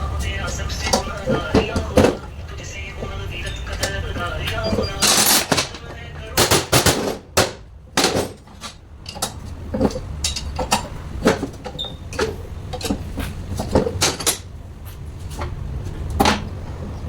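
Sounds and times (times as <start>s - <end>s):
steady low hum: 0.0s - 11.7s
metal parts and tools clattering: 0.2s - 14.5s.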